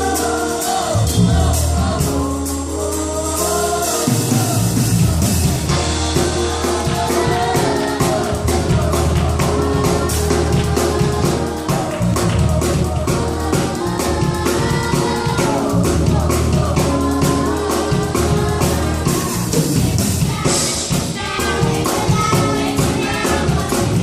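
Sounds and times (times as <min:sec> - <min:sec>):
held chords: 0:00.0 - 0:20.4
bass line: 0:00.0 - 0:20.5
choir singing gospel song: 0:00.0 - 0:24.0
drum beats: 0:00.0 - 0:24.0.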